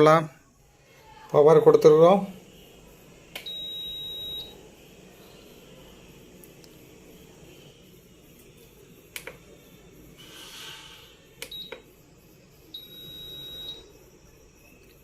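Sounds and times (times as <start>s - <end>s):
stove buzzer beeping: 1.3s - 15.0s
sharp clicks: 9.1s - 9.4s.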